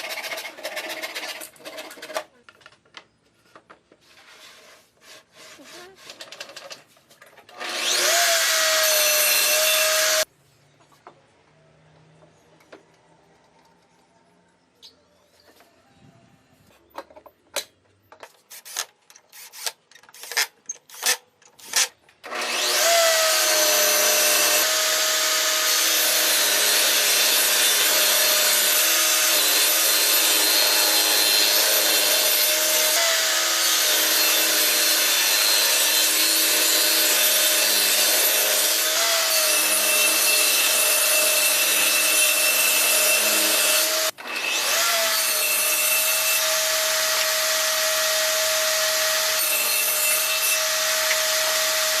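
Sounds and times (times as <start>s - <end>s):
table saw cutting wood: 7.5s - 10.3s, 21.7s - 52.0s.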